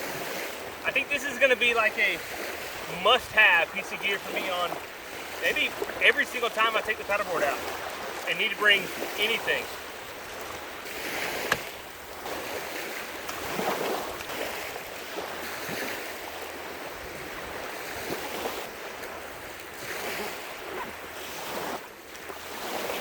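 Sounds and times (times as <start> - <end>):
surf washing onto beach: 0.0 - 23.0.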